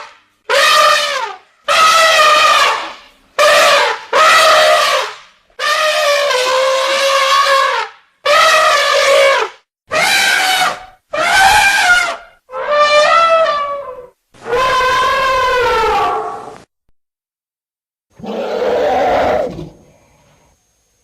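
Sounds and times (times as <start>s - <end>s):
elephant trumpeting: 0.0s - 16.6s.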